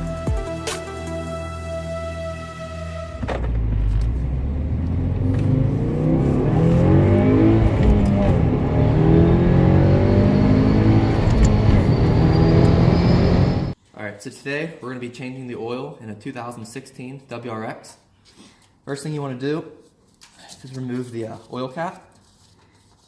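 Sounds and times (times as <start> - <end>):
car engine revving: 3.2 - 13.8.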